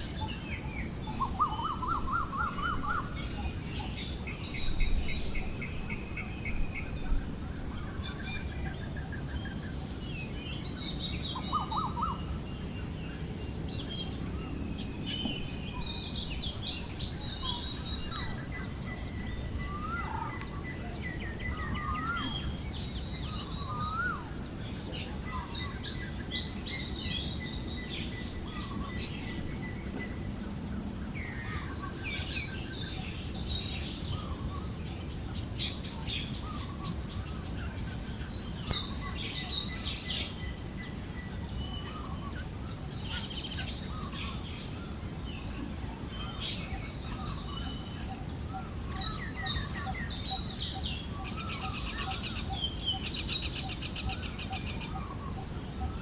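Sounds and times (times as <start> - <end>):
birds chirping and trilling: 10.4 - 42.4.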